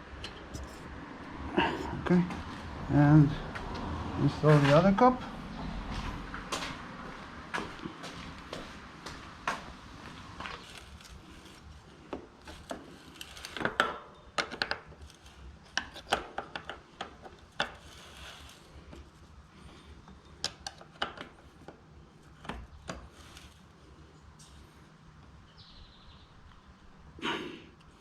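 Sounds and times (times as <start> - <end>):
wrench rubbing: 17.6 - 19.1.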